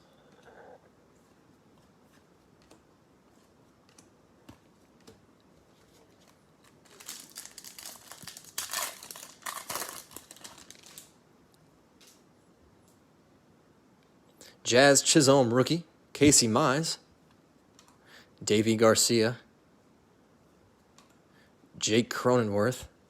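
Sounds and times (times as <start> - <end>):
foil wrapper tearing: 6.7 - 11.2.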